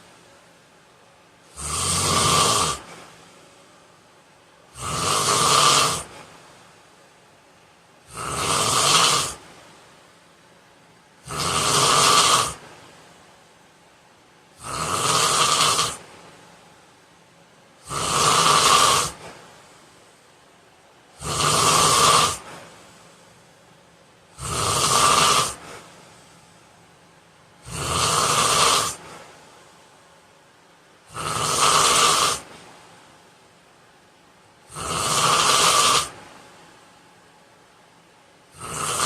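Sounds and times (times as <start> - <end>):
quiet breaths: 0.0 - 39.0
man snoring loudly: 1.5 - 2.9, 4.8 - 6.1, 8.1 - 9.4, 11.2 - 12.6, 14.6 - 16.0, 17.8 - 19.3, 21.2 - 22.6, 24.3 - 25.8, 27.6 - 29.1, 31.1 - 32.5, 34.7 - 36.2, 38.6 - 39.0.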